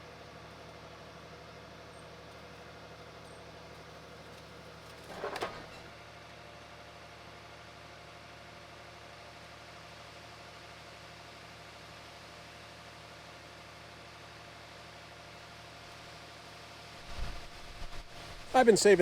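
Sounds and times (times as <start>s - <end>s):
sawmill engine idling: 18.1s - 19.0s.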